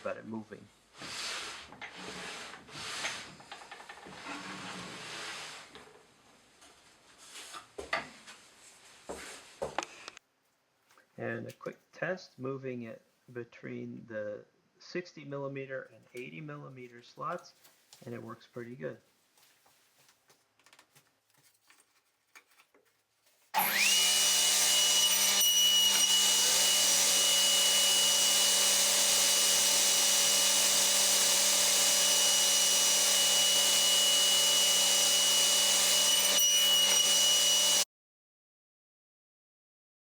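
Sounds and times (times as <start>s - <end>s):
table saw motor whining: 23.6s - 37.9s.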